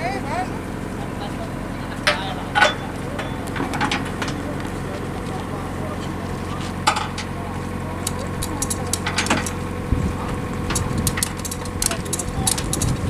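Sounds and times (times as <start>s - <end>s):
diesel engine running: 0.0s - 13.0s
sharp metallic clicks and knocks: 2.1s - 4.8s, 8.0s - 13.0s.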